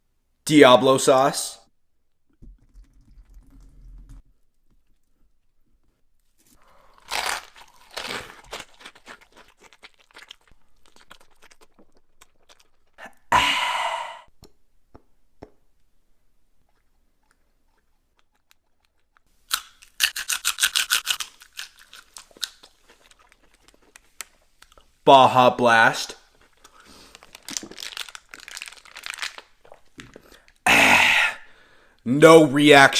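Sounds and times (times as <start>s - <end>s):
crunchy bites and chewing: 6.6s - 13.0s, 17.2s - 24.9s, 26.2s - 30.6s.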